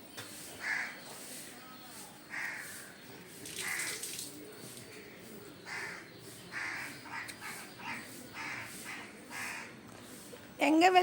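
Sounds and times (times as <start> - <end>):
crows cawing: 0.6 - 1.0, 2.3 - 4.2, 5.6 - 9.8.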